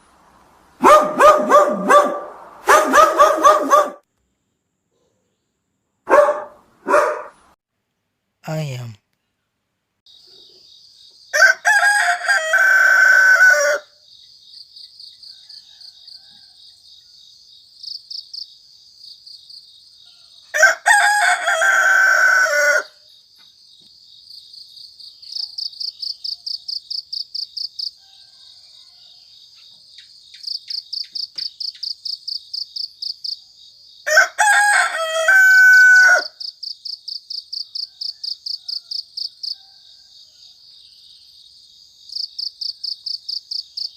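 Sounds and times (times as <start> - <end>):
crickets chirping: 10.1 - 43.9
rooster crowing: 11.3 - 14.0, 15.2 - 17.2, 20.1 - 23.1, 27.8 - 29.6, 34.0 - 36.4, 37.7 - 40.9.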